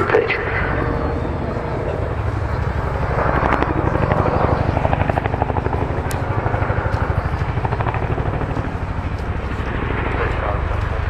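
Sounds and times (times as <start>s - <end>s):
helicopter rotor blade slaps: 4.8s - 11.0s.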